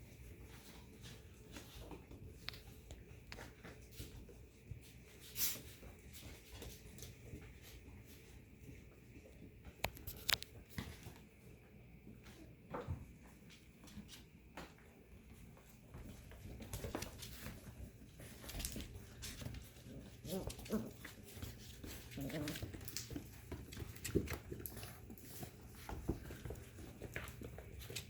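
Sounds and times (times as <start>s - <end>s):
puppies moving about: 0.0s - 28.0s
small clicks and taps: 9.7s - 11.3s.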